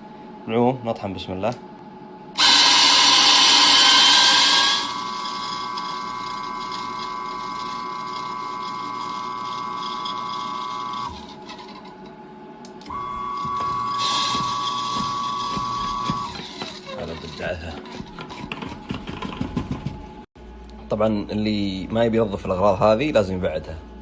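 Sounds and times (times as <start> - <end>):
electric coffee grinder running: 2.4 - 11.9, 12.8 - 19.8.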